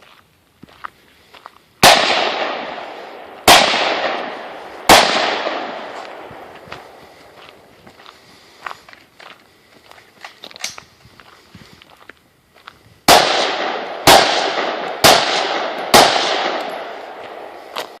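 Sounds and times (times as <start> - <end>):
light footsteps: 0.0 - 1.7, 4.2 - 13.0, 16.6 - 18.0
rifle shots with echo: 1.8 - 7.4, 13.1 - 18.0.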